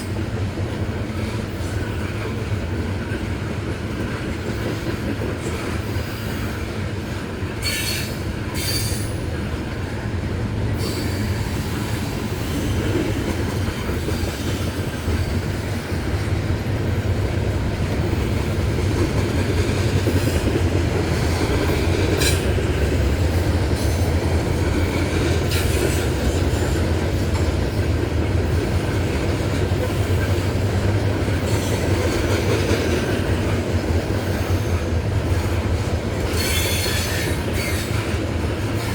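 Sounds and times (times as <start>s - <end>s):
train wheels rumbling on rail: 0.0s - 38.9s
wheel squeals: 36.3s - 38.0s.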